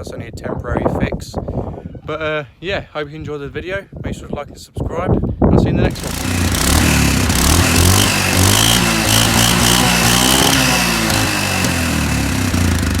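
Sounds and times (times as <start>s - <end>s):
quad bike engine revving: 5.8s - 13.0s.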